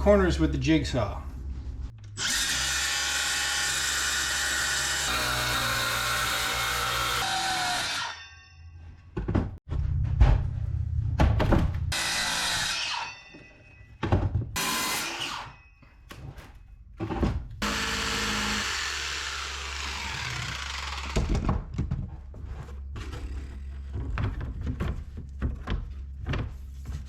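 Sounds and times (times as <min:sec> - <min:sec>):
knocks and handling: 0:08.8 - 0:11.9, 0:13.3 - 0:14.6, 0:15.8 - 0:17.6, 0:21.0 - 0:27.0.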